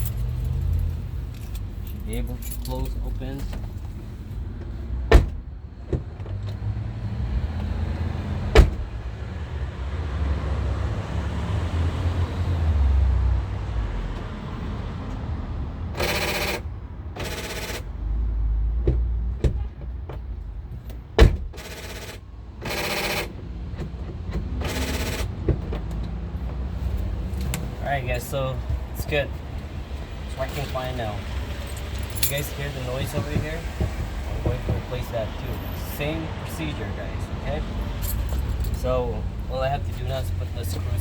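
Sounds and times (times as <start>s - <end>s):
door latch clunks: 5.1s - 6.6s, 8.5s - 9.0s, 21.2s - 21.6s
door lock actuator buzzing: 16.0s - 17.9s, 21.2s - 23.3s, 24.6s - 25.3s.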